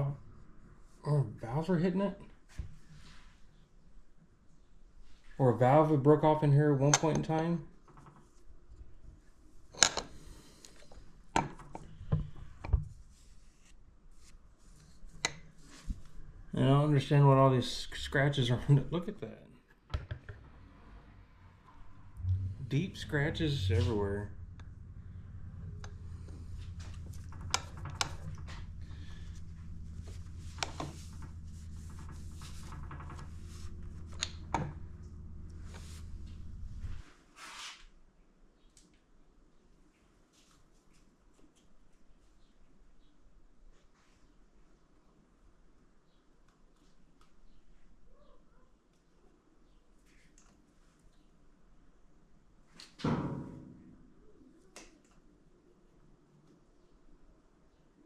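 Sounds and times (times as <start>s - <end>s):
steady low hum: 20.1s - 37.2s
metal engine parts clicking: 24.3s - 36.6s.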